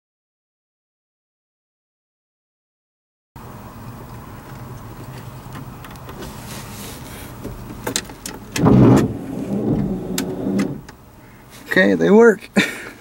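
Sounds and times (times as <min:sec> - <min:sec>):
truck engine humming: 0:03.4 - 0:11.6.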